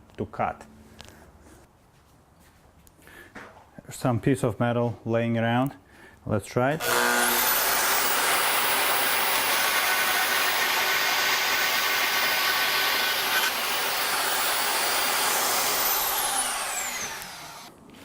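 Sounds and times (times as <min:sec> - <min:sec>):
band saw cutting metal: 0:06.8 - 0:17.7
motor winding down: 0:06.8 - 0:17.7.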